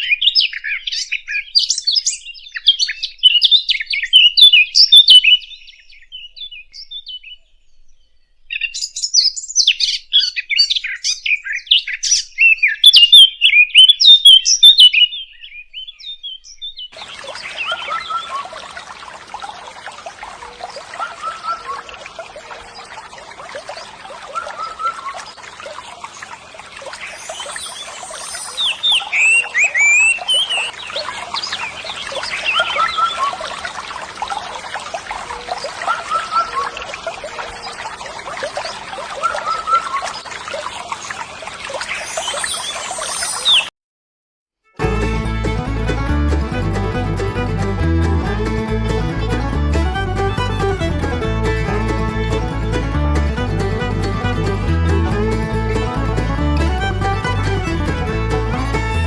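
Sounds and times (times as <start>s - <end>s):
small birds twittering: 0.0s - 19.1s, 20.3s - 43.7s.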